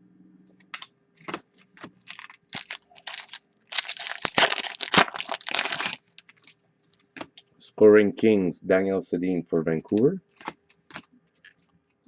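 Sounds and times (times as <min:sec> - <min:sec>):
packaging crinkling: 0:01.8 - 0:06.6
cards clicking and snapping: 0:10.4 - 0:11.1.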